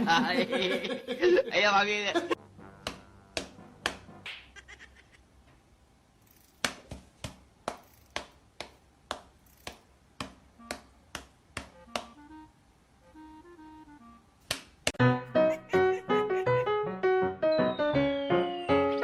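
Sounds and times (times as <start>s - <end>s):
sharp clicks or taps: 6.6s - 12.2s.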